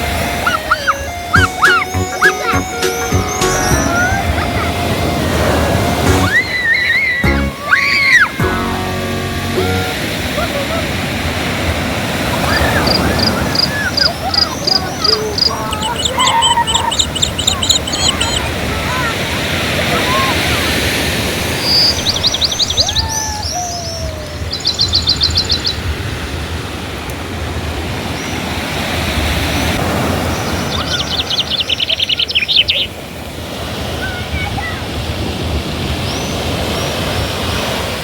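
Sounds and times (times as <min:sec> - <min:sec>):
birds chirping high: 0:00.0 - 0:08.4, 0:11.8 - 0:26.0, 0:30.0 - 0:33.0, 0:36.0 - 0:37.5
lower bird calls: 0:00.0 - 0:08.4, 0:12.3 - 0:18.6, 0:21.4 - 0:25.9
steady outdoor rushing noise: 0:00.0 - 0:32.3
high trilled bird notes: 0:00.1 - 0:10.2, 0:12.6 - 0:18.5.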